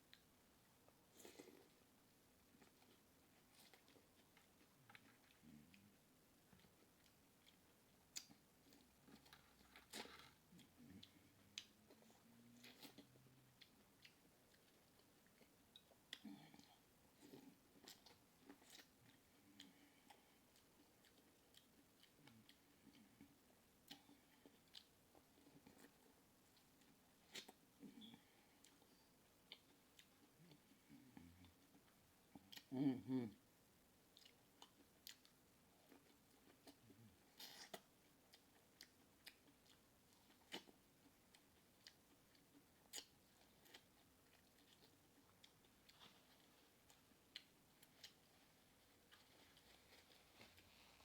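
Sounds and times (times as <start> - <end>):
person chewing and lip-smacking: 2.4 - 33.4, 34.1 - 50.6
mouth smacking while eating: 29.5 - 33.5.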